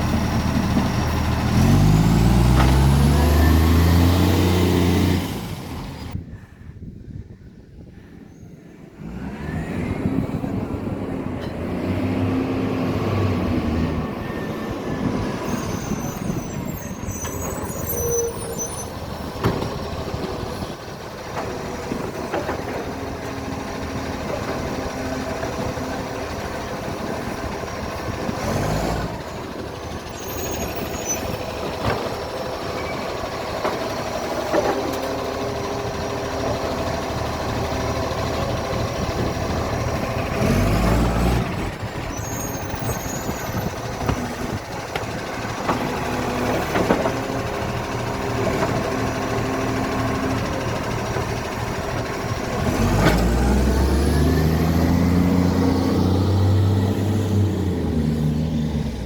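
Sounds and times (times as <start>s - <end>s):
diesel engine with exhaust leak: 0.0s - 6.2s, 9.0s - 59.0s.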